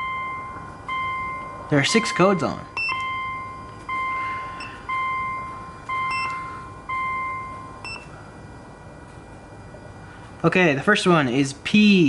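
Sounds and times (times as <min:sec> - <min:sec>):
car warning chime dinging: 0:00.0 - 0:08.1.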